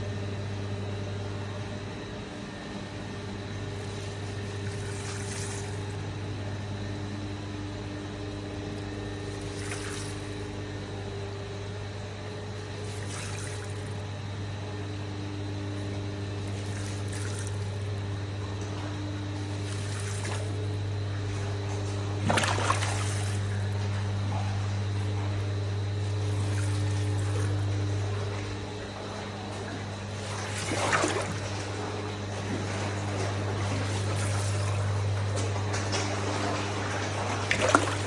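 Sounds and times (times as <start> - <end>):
steady low hum: 0.0 - 38.0
fish splashing at water surface: 3.6 - 6.2, 9.0 - 11.1, 12.4 - 14.2, 15.8 - 38.0.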